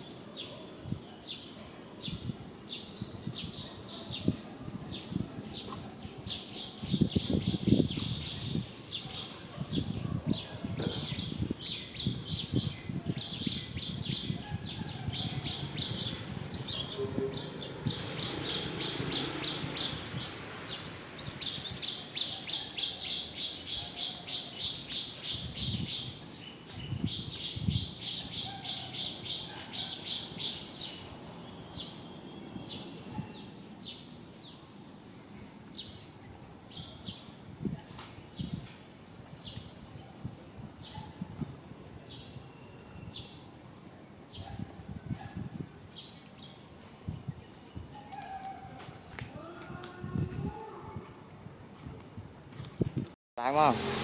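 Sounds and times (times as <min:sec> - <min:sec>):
bird chirping: 0:05.0 - 0:34.7.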